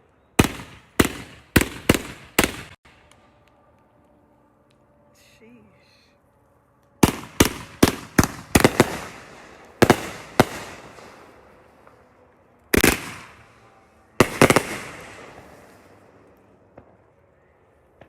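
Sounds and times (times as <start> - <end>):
firework bangs echoing: 0.4 - 2.8, 7.0 - 12.1, 12.7 - 17.0.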